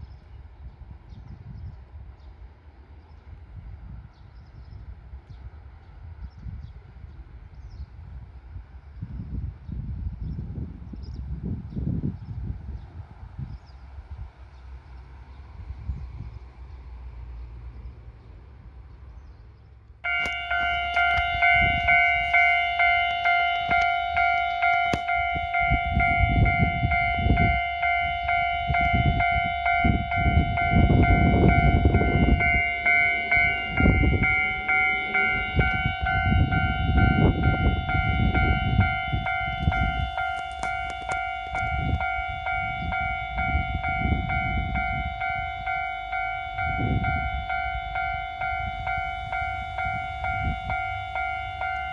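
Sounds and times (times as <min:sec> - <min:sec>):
electric train rumbling: 0:00.0 - 0:51.9
level crossing alarm ringing: 0:20.0 - 0:51.9.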